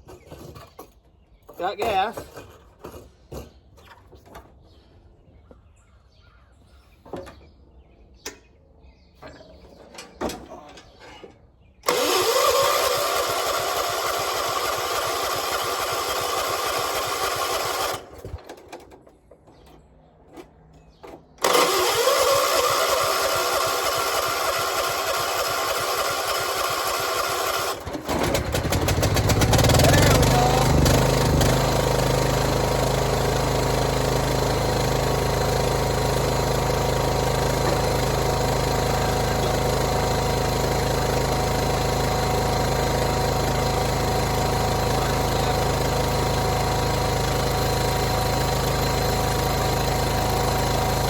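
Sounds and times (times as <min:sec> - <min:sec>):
engine starter cranking: 0:10.0 - 0:19.0, 0:21.3 - 0:51.0.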